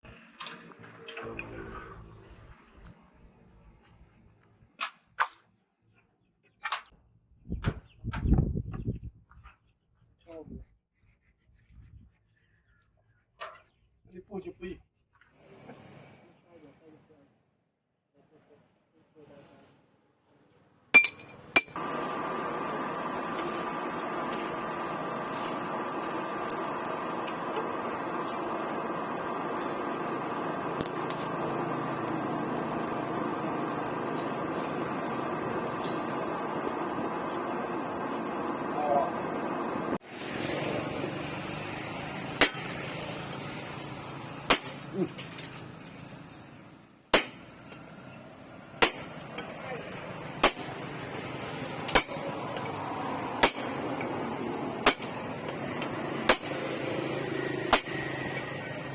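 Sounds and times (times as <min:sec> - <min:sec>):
hammer striking steel: 0:21.0 - 0:21.8, 0:42.4 - 0:43.0, 0:44.5 - 0:45.6, 0:47.2 - 0:47.8, 0:48.8 - 0:49.6, 0:50.4 - 0:51.0, 0:51.9 - 0:52.7, 0:53.4 - 0:54.0, 0:54.8 - 0:56.6, 0:57.7 - 0:58.4
steel striking steel clinks: 0:21.0 - 0:21.8, 0:50.4 - 0:50.9, 0:57.7 - 0:58.2
steady background noise: 0:21.0 - 0:58.9.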